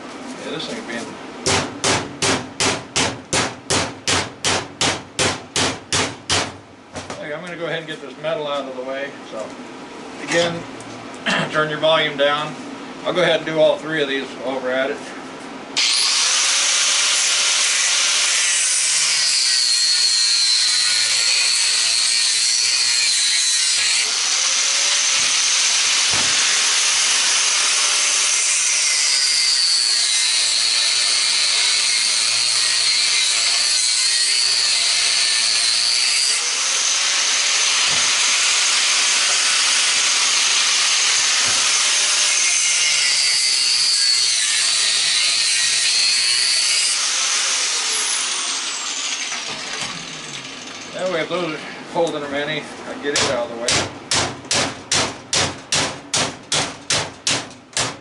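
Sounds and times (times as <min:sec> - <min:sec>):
angle grinder cutting metal: 0:15.8 - 0:51.6.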